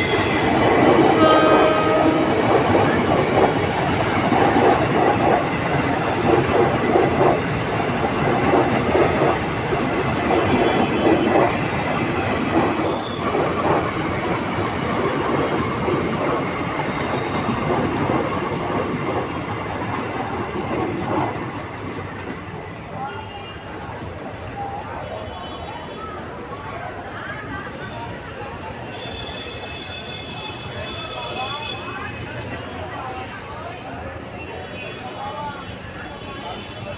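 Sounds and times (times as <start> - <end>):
train wheels rumbling: 0.0 - 23.2
wheel squeals: 5.8 - 8.9, 9.7 - 11.5, 12.5 - 13.5, 16.2 - 17.7.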